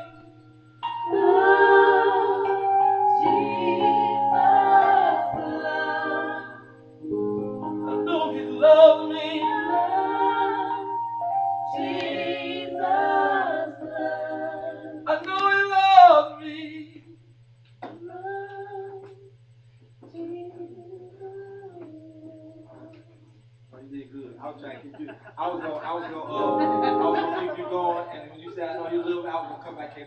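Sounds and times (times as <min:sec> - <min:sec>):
low electrical hum: 0:00.0 - 0:30.0
gospel group singing in harmony: 0:00.8 - 0:15.6, 0:25.8 - 0:29.4.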